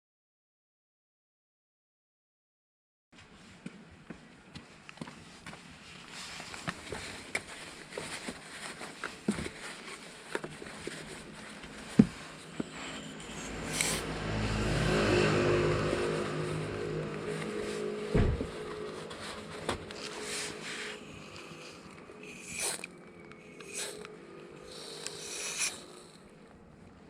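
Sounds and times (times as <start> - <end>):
car engine: 11.2 - 27.0
thump: 18.1 - 18.5.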